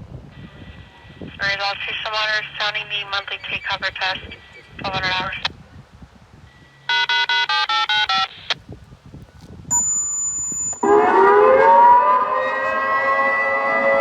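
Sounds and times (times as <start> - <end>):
short chime tones: 9.7 - 10.9
electronic siren wail: 10.8 - 14.0.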